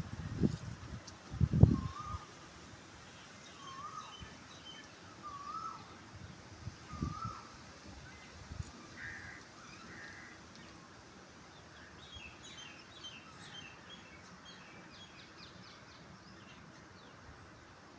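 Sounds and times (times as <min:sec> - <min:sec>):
low outdoor background noise: 0:00.0 - 0:17.9.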